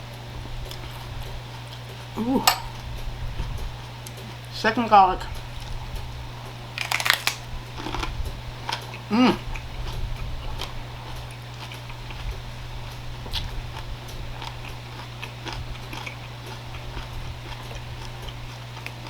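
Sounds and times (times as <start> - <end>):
steady low hum: 1.2 - 3.8
chewing crunches: 6.8 - 9.0, 13.3 - 19.0.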